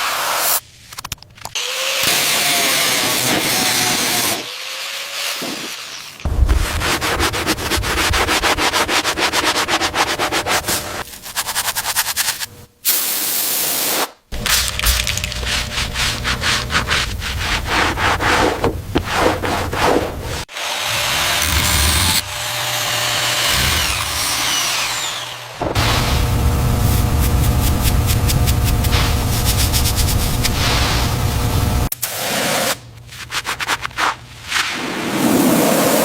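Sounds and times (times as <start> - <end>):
rhythmic scrubbing strokes: 14.4 - 30.6.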